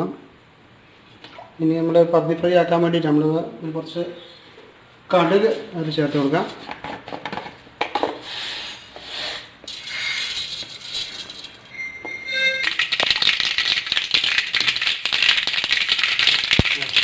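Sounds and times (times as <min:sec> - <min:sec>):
mustard seeds popping in hot oil: 0:12.6 - 0:17.0.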